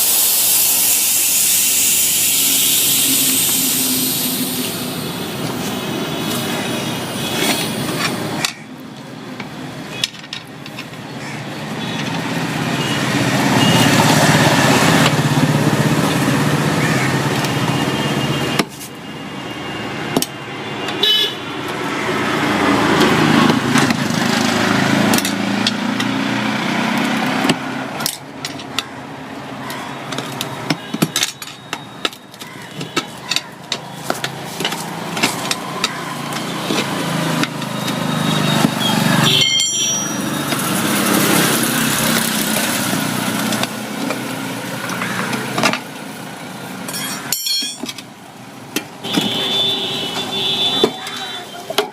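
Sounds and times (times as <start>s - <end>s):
vehicles passing: 0.0s - 51.9s
car horn: 20.6s - 21.6s, 38.2s - 40.2s, 49.0s - 51.4s.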